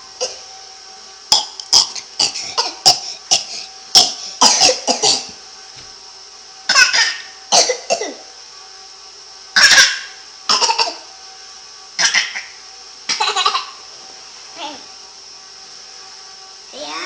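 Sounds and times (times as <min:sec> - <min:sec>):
person coughing: 0:01.4 - 0:05.3, 0:07.0 - 0:08.2.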